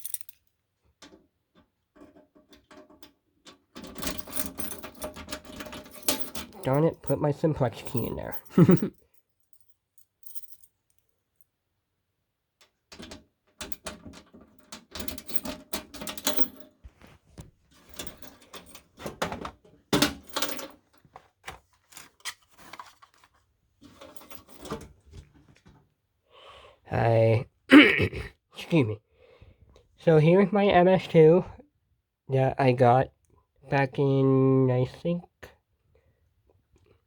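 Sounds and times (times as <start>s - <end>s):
keys jangling in a lock: 0.0s - 0.4s, 2.0s - 10.8s, 12.9s - 16.8s, 17.7s - 19.3s, 19.9s - 20.9s, 24.0s - 24.9s.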